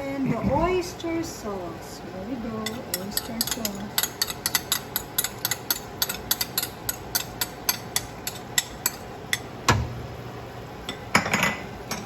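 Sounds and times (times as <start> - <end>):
pork crackling in hot pan: 2.8 - 9.6.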